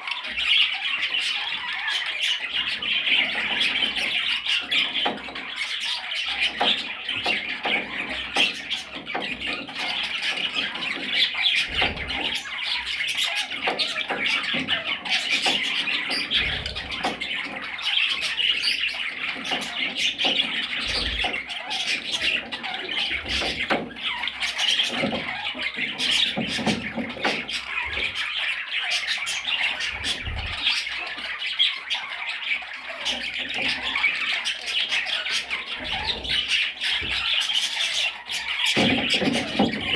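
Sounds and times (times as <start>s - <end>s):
budgerigars chattering and squawking: 0.0s - 39.9s.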